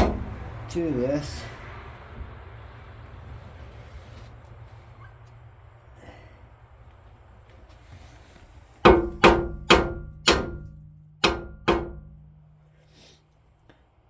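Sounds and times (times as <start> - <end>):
hammer blows on metal ringing: 8.9 - 12.5.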